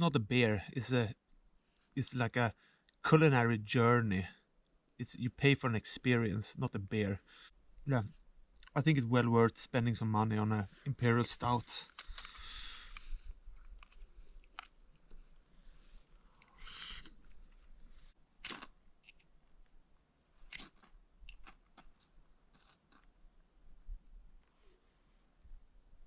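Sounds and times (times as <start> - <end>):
faint clicks: 11.8 - 15.2.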